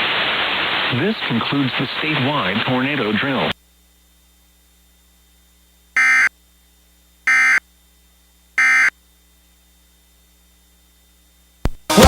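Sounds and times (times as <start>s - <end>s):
digital data tone bursts: 6.0s - 6.3s, 7.3s - 7.6s, 8.6s - 8.9s.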